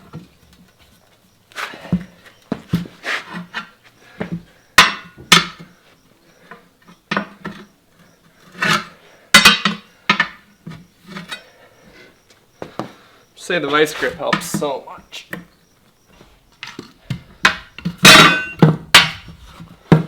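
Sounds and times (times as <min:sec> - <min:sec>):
metal tools clanking on wheel rim: 0:01.6 - 0:05.7, 0:06.5 - 0:11.6, 0:13.6 - 0:15.5, 0:16.6 - 0:20.0.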